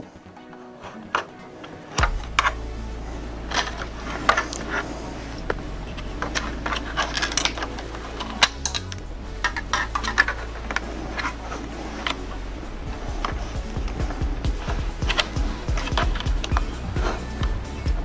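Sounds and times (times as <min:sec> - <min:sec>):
steady low hum: 0:02.0 - 0:18.0.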